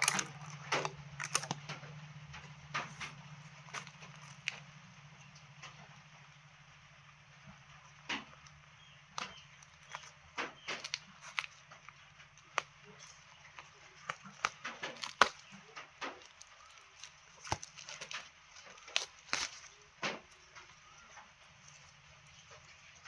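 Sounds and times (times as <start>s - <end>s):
packing crinkling: 0.0s - 5.7s, 8.0s - 23.0s
plant pots clicking and knocking: 0.0s - 6.0s, 7.5s - 23.0s.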